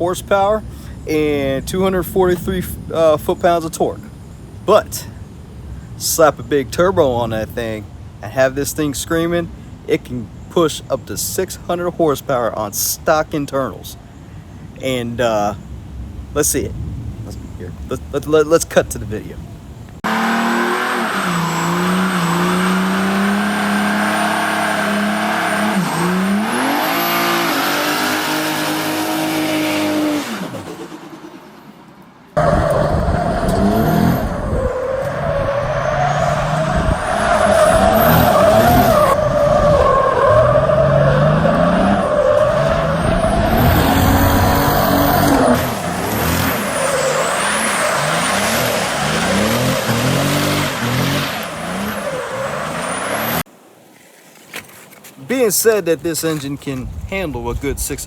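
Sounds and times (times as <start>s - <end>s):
diesel engine revving hard: 20.0s - 31.2s, 32.4s - 53.5s
tyres squealing: 20.1s - 30.6s, 33.7s - 53.4s.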